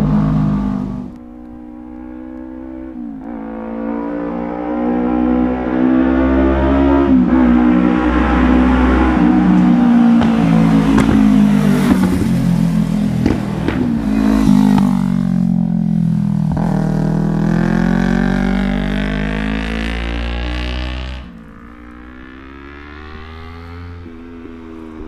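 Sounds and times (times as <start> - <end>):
motorcycle engine running: 9.1 - 20.0
exhaust crackles and pops: 9.5 - 15.6.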